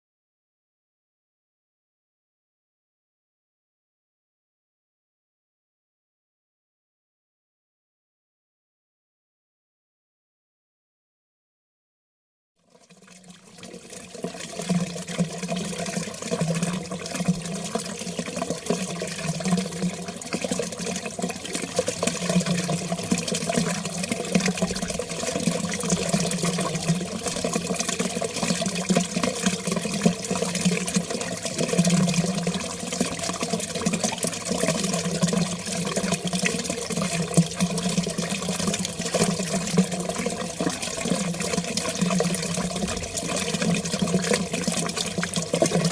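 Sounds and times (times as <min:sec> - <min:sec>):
water flowing: 0:12.8 - 0:45.9.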